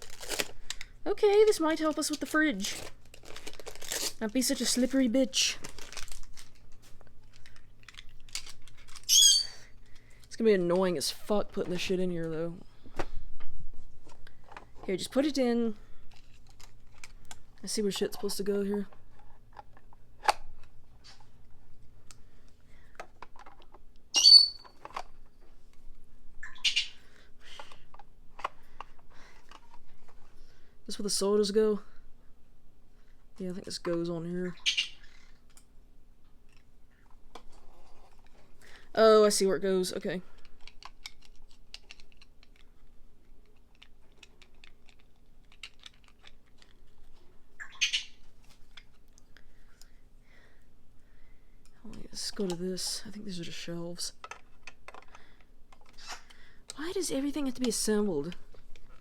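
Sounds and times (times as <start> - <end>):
plastic toy parts clicking: 7.4 - 9.1, 40.4 - 42.7, 43.5 - 46.7, 54.2 - 56.8
high-pitched squawk: 9.1 - 9.6, 24.2 - 24.6
raspy squawk: 9.1 - 9.6.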